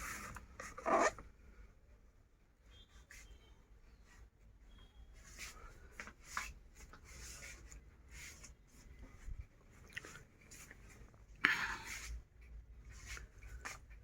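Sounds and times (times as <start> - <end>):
rustling and scraping handling noise: 0.0 - 1.4, 5.2 - 14.0.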